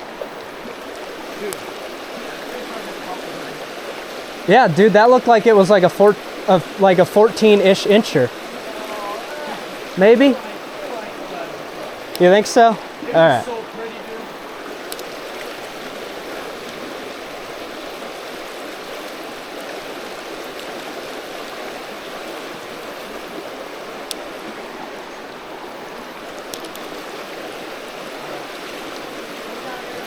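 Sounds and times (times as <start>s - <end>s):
water running over rocks: 0.0s - 30.0s
faint clicks: 0.8s - 1.8s, 14.8s - 15.7s, 24.0s - 24.6s, 26.2s - 27.1s.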